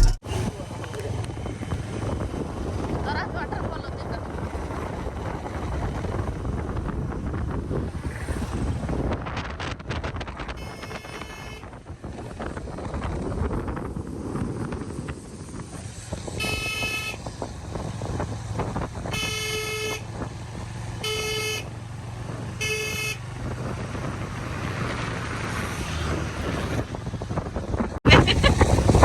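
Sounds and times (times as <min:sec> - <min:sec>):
vehicle rumbling on road: 0:00.0 - 0:29.0
vehicle horn honking: 0:10.6 - 0:11.7, 0:16.4 - 0:17.2, 0:19.1 - 0:20.1, 0:21.0 - 0:21.7, 0:22.5 - 0:23.2.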